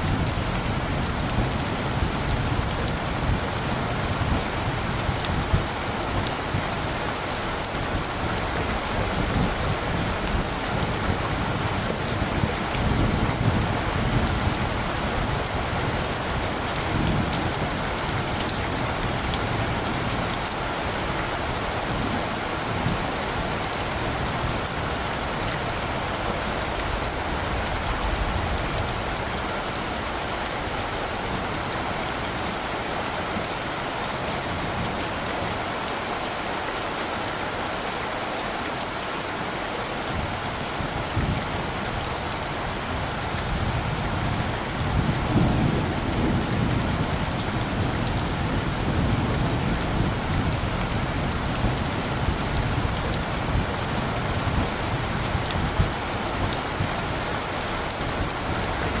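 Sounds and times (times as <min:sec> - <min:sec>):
heavy rain: 0:00.0 - 0:59.0
distant thunder rumbling: 0:43.6 - 0:53.8.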